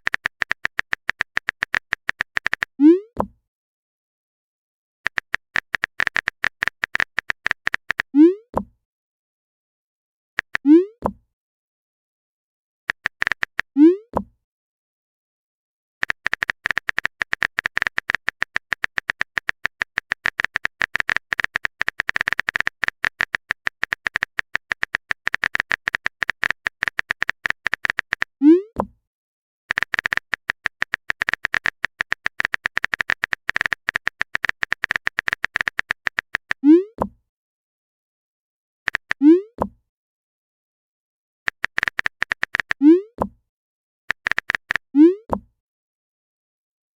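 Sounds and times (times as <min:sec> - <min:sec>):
rapid keyboard clicks: 0:00.0 - 0:02.8, 0:05.1 - 0:08.1, 0:10.4 - 0:10.6, 0:12.9 - 0:13.7, 0:16.0 - 0:28.4, 0:29.7 - 0:36.6, 0:38.9 - 0:39.2, 0:41.5 - 0:42.8, 0:44.1 - 0:44.9.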